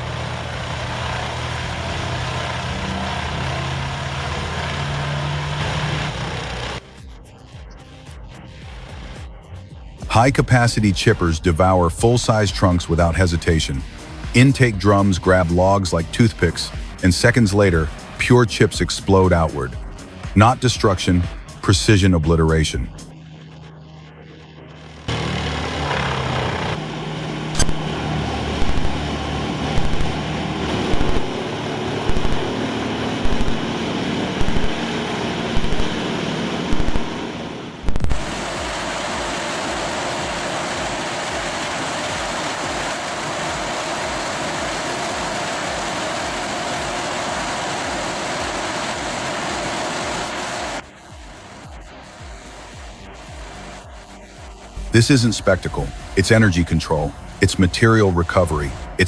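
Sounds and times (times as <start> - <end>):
wood chipper engine knocking: 0.0 - 6.8, 25.1 - 26.8
steady machine noise: 0.0 - 59.0.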